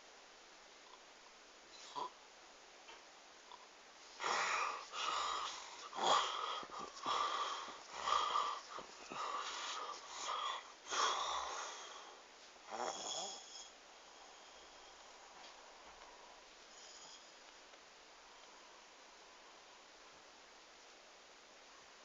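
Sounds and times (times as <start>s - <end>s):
person snoring with wheezy whistles: 12.7s - 15.2s.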